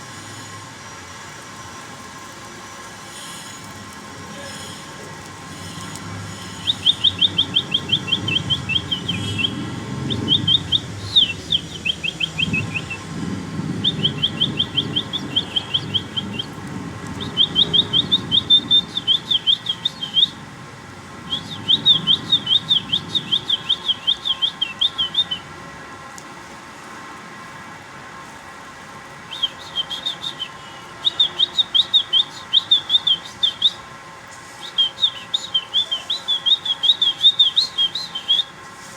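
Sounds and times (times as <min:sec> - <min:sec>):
small bird chirping trills: 0:05.5 - 0:13.1, 0:13.8 - 0:20.4, 0:21.3 - 0:25.4, 0:29.3 - 0:33.8.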